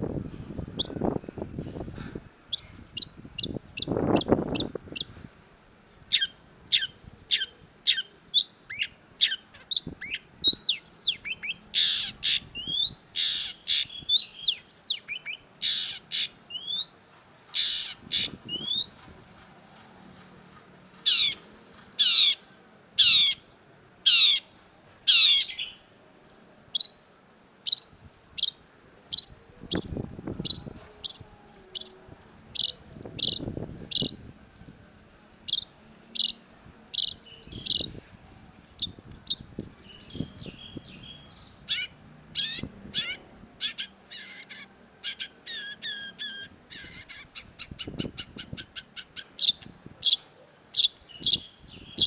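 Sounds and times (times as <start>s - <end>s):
bird harsh rasping calls: 2.5s - 19.0s, 21.0s - 23.5s, 24.1s - 24.5s, 25.1s - 25.8s, 32.6s - 34.2s, 35.5s - 52.0s.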